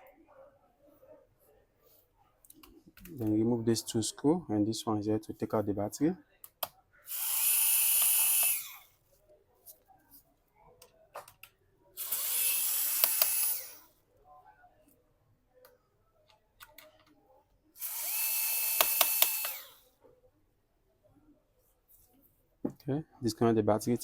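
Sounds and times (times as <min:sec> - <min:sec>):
electric screwdriver whirring: 0:07.1 - 0:08.9, 0:12.0 - 0:13.8, 0:17.8 - 0:19.8.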